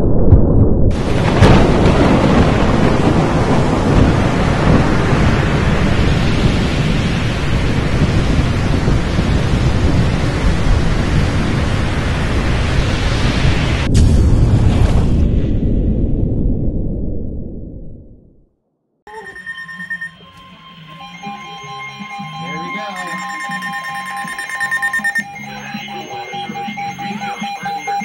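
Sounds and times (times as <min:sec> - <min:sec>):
thunder crack: 0:00.0 - 0:18.2
low thunder rumbling: 0:00.0 - 0:18.4
heavy rain: 0:00.9 - 0:13.9.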